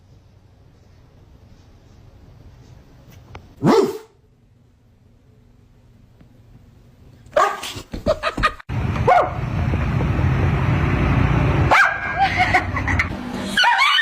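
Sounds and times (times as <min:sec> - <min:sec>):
dog barking: 0:03.6 - 0:04.2, 0:07.3 - 0:07.8, 0:09.0 - 0:09.4, 0:11.7 - 0:12.2.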